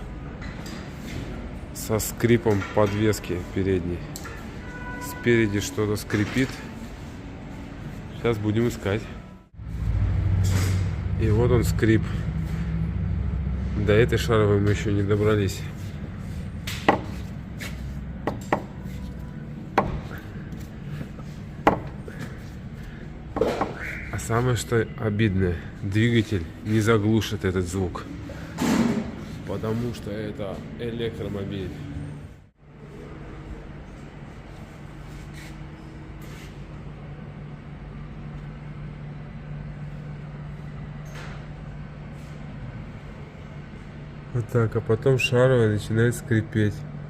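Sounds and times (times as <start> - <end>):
low hum: 6.7 - 34.8.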